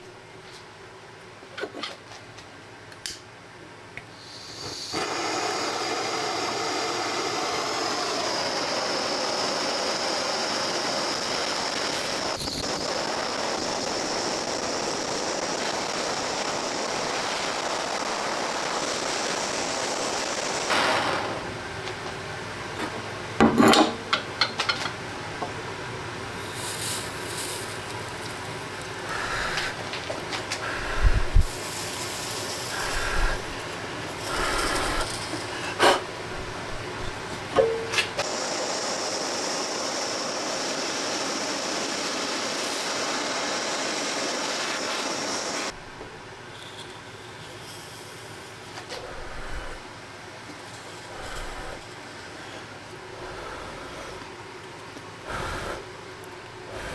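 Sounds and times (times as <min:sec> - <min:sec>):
steady hiss: 0:04.0 - 0:22.8, 0:26.2 - 0:45.8, 0:46.6 - 0:56.9
power tool whirring: 0:30.6 - 0:45.7.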